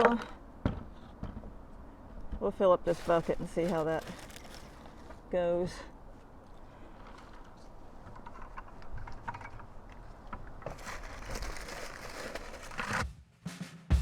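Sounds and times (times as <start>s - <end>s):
leaves and muck rustling: 2.4s - 8.0s, 10.1s - 13.0s.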